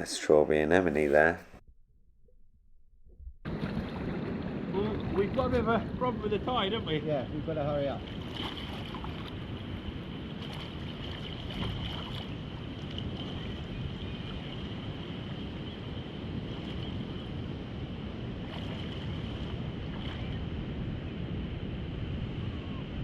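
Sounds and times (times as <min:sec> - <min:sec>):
wind on microphone: 0:03.0 - 0:23.0
sea water washing over rocks: 0:03.5 - 0:06.4, 0:07.8 - 0:15.5.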